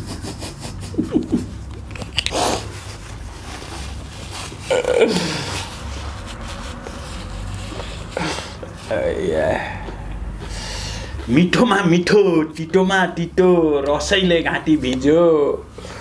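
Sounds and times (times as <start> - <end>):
person chewing crunchy food: 0.8 - 8.8.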